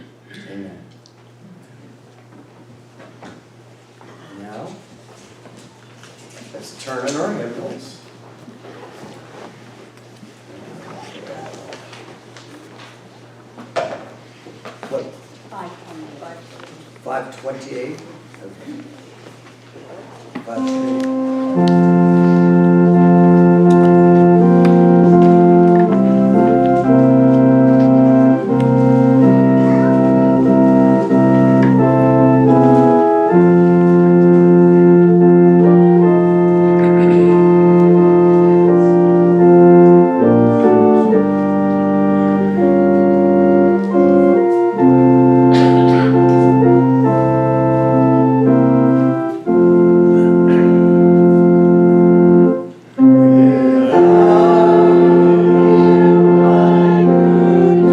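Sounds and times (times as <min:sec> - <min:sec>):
church organ chords: 0:20.4 - 0:57.9
congregation singing: 0:20.4 - 0:57.9.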